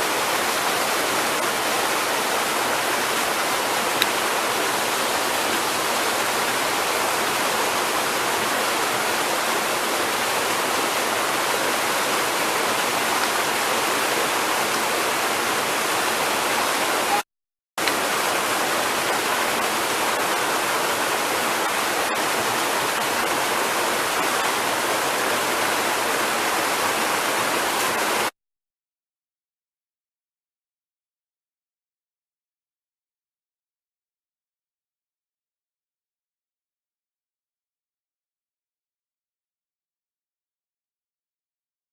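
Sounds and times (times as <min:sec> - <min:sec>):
waterfall rushing: 0:00.0 - 0:17.2, 0:17.8 - 0:28.3.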